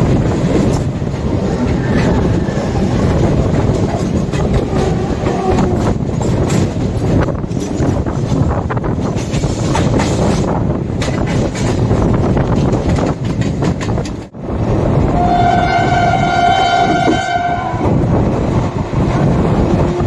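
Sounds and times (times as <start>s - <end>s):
wheels clattering over rail joints: 0.0s - 16.4s
train rumble: 0.0s - 20.0s
locomotive horn: 15.1s - 18.0s.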